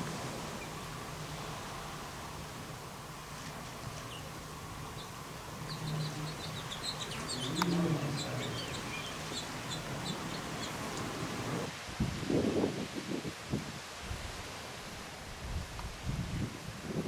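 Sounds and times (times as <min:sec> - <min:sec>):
outdoor background noise: 0:00.0 - 0:17.0
small birds chirping: 0:03.4 - 0:11.7.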